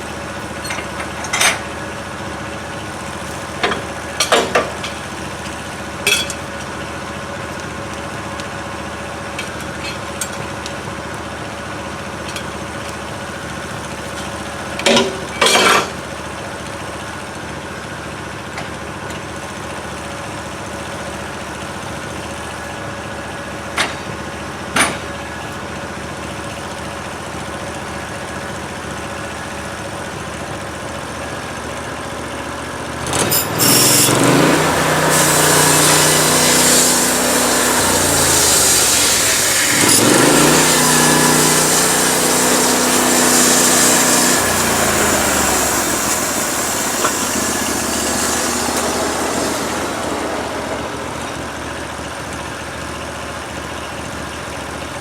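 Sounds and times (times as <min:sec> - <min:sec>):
sawmill engine idling: 0:00.0 - 0:55.0
sharp metal clanks: 0:06.1 - 0:06.4.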